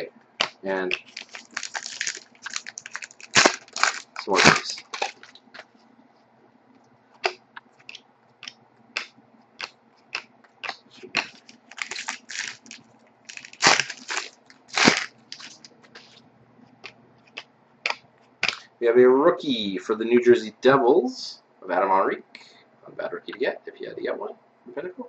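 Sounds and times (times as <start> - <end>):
cards scraping and rustling: 11.2 - 16.2.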